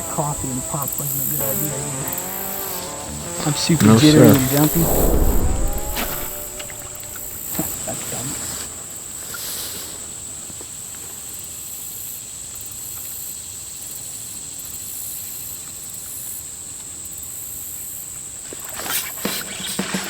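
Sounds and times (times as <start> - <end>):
pulsing insect chorus: 0.0 - 8.3
insects buzzing: 0.0 - 8.5
sharp noisy bursts: 4.0 - 7.5.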